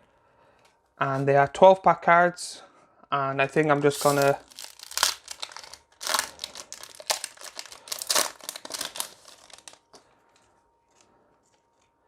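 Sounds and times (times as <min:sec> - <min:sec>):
plastic wrapper crinkling: 0:03.8 - 0:10.0.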